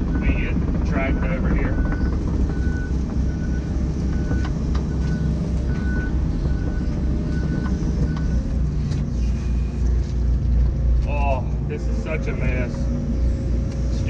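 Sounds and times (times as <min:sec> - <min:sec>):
travel alarm beeping: 0:00.0 - 0:08.5
diesel engine running: 0:00.0 - 0:14.0.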